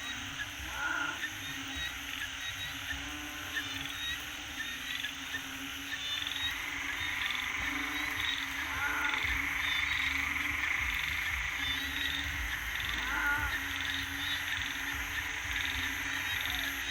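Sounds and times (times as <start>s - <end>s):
frogs croaking: 0.0s - 16.9s
high-pitched drone: 6.4s - 16.9s.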